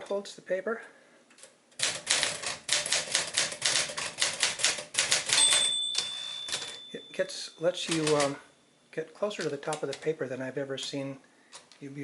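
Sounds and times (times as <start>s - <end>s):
typewriter key strikes: 1.8s - 6.8s
typewriter bell ringing: 5.2s - 7.3s, 7.9s - 8.4s.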